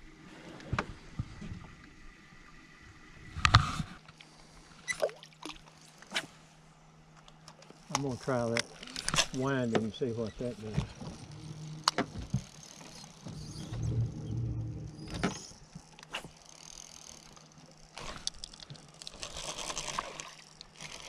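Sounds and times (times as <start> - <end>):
fishing reel being cranked: 7.6 - 13.7, 14.9 - 21.0
reel handle squeaking: 8.0 - 19.9.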